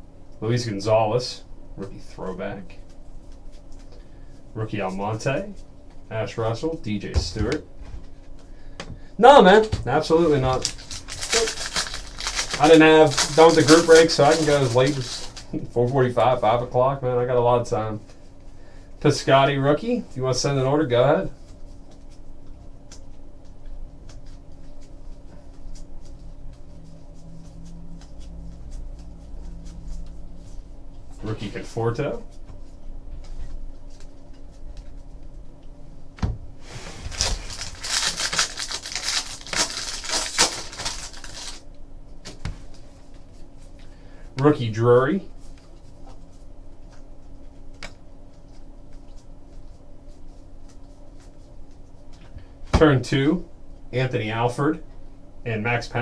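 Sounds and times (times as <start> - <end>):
steady low hum: 0.0 - 56.0
trading cards flipping: 10.2 - 15.7.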